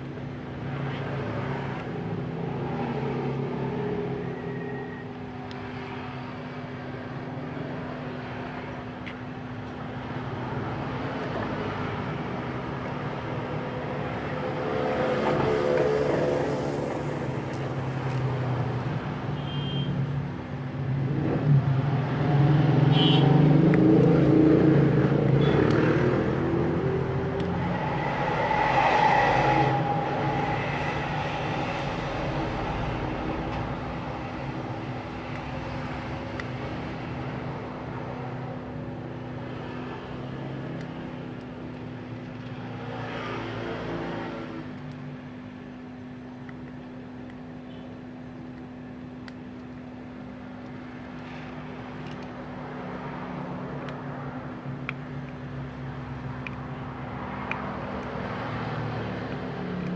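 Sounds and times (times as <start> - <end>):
vehicle engines passing: 0.0 - 19.4, 20.0 - 59.9
steady low hum: 26.0 - 38.2.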